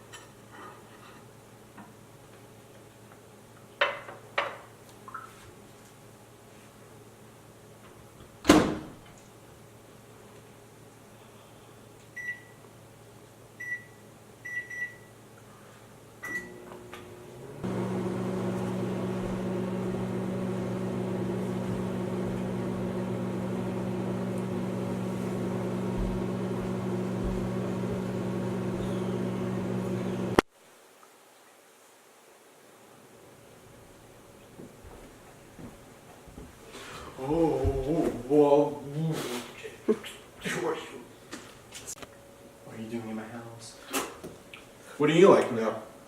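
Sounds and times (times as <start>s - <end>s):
microwave keypad beeps: 12.2s - 12.6s, 13.6s - 15.1s
microwave oven humming: 16.2s - 30.4s.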